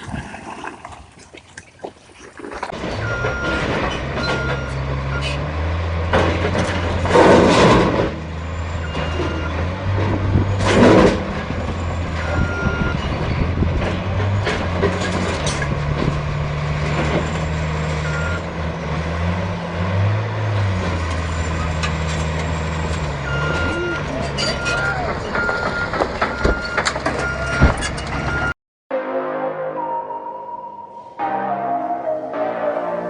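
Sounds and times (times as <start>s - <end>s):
heavy vehicle engine droning: 2.8s - 28.5s.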